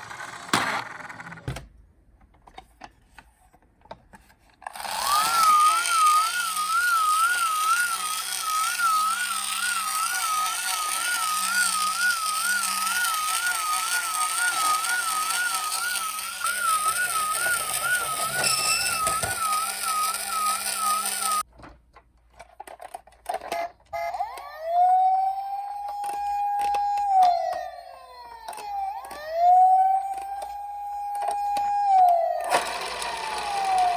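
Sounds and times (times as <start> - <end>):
toy siren warbling: 4.8 - 21.4, 23.9 - 33.9.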